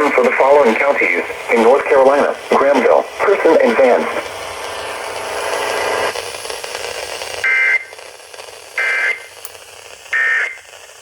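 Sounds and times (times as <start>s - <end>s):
radio hiss: 0.0s - 11.0s
two-tone digital data bursts: 7.4s - 8.0s, 8.8s - 9.3s.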